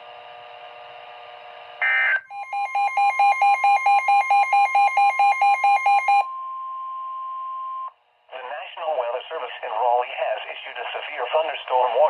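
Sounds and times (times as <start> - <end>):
steady alarm tone: 1.8 - 6.3
beeping alarm: 1.8 - 6.4.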